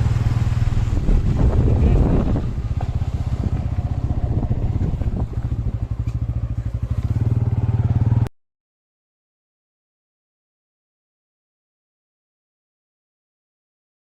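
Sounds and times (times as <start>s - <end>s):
motorcycle engine running: 0.0s - 8.3s.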